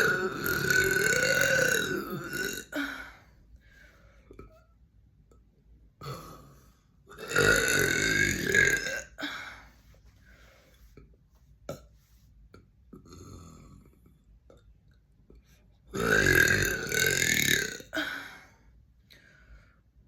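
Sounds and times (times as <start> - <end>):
person belching: 0.0 - 2.9, 6.0 - 9.3, 15.9 - 18.1.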